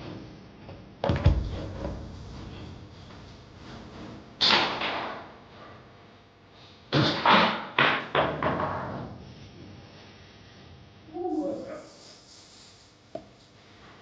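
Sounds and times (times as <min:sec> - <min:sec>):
foosball ball cracking off players: 0:03.5 - 0:05.3, 0:07.0 - 0:09.0.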